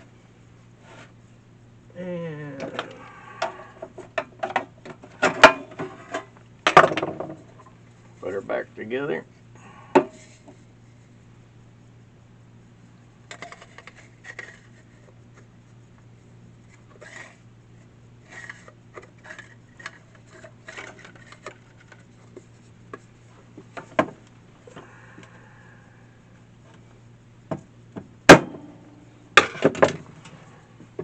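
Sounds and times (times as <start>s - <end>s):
steady low hum: 0.0s - 31.0s
small clicks taps and scrapes: 18.3s - 24.4s.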